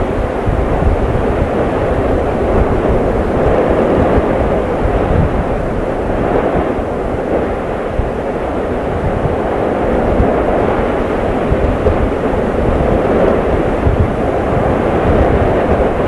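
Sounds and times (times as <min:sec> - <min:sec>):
deep rumble of volcanic eruption: 0:00.0 - 0:16.0.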